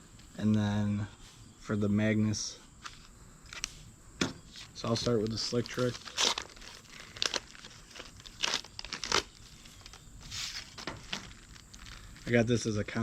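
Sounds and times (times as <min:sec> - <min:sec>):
packaging crinkling and rustling: 0:04.6 - 0:12.4
sharp crackles: 0:04.8 - 0:12.6.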